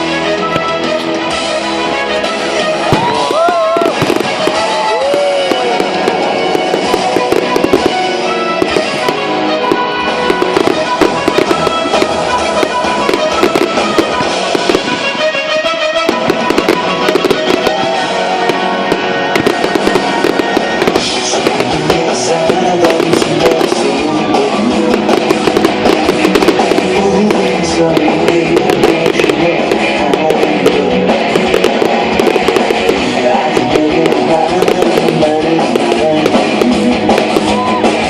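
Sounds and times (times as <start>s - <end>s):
fireworks crackling and banging: 0.0s - 38.0s
loud pop music: 2.4s - 15.3s, 16.1s - 38.0s.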